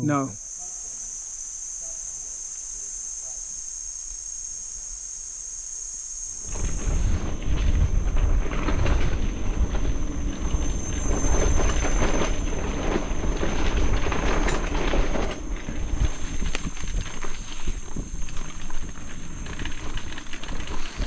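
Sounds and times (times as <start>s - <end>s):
forest insects droning: 0.0s - 21.0s
bicycle tyres rolling on trail: 3.4s - 21.0s
wind buffeting microphone: 6.4s - 21.0s.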